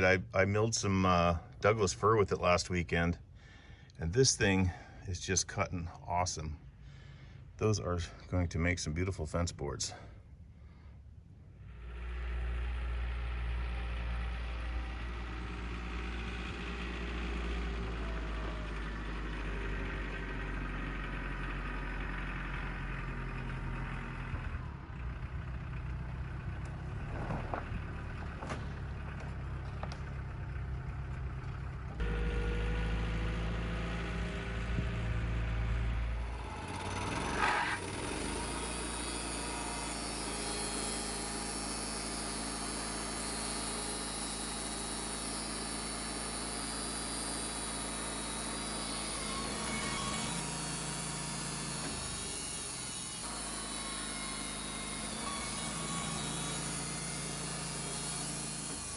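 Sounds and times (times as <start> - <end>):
sawmill engine drone: 0.0 - 58.9
band blade sawing through log: 36.3 - 58.9.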